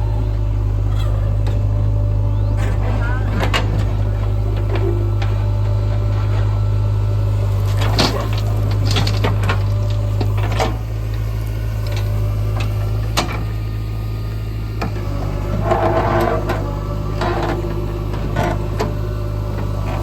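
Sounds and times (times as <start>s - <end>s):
heavy diesel engine running: 0.0s - 20.0s.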